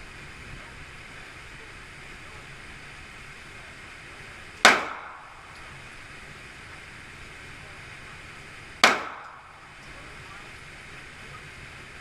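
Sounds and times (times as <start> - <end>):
pistol shot with echo: 4.6 - 5.5, 8.8 - 9.7.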